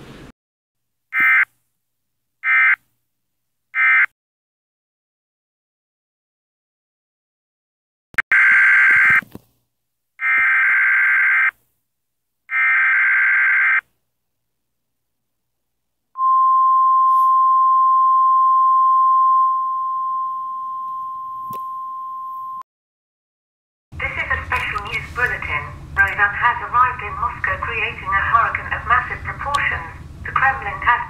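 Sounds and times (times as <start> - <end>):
steady attention tone: 16.2 - 22.6.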